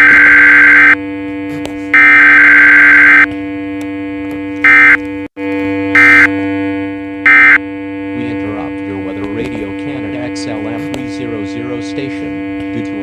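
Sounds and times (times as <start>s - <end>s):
harsh buzzing alert blasts: 0.0s - 13.0s
steady low electronic tone: 0.0s - 13.0s.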